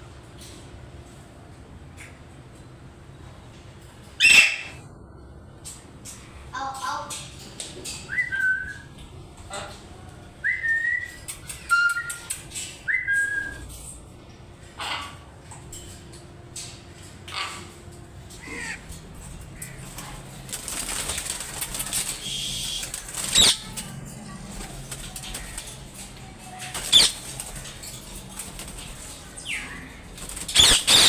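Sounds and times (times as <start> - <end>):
parrots squawking: 4.2 - 4.8, 17.3 - 23.9, 24.9 - 31.0
wings flapping: 18.4 - 31.0
parrot whistles: 30.6 - 31.0.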